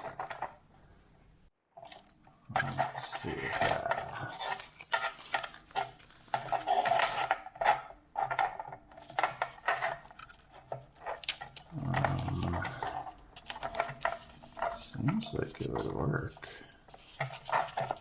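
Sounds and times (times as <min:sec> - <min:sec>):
clicks taps and scrapes of objects: 0:00.0 - 0:00.9, 0:01.8 - 0:18.0.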